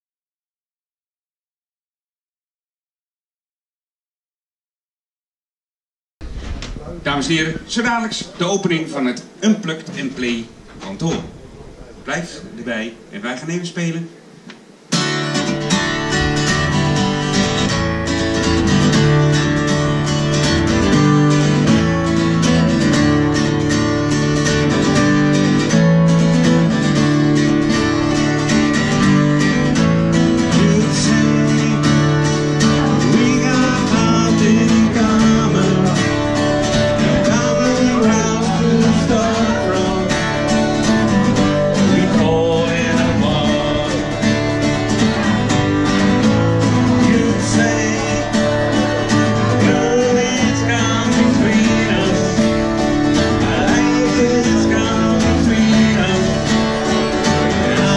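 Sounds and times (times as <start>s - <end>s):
acoustic guitar plucking: 14.6s - 57.9s.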